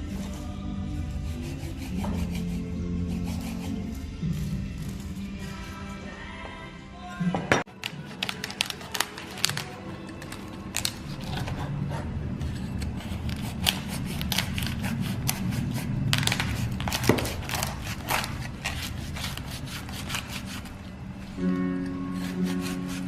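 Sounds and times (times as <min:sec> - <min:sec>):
pork skin crackling and popping: 0:07.7 - 0:11.3.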